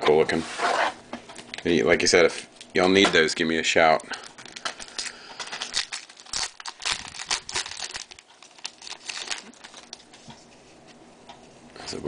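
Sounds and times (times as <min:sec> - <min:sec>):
foil wrapper crinkling and tearing: 0:04.0 - 0:10.2.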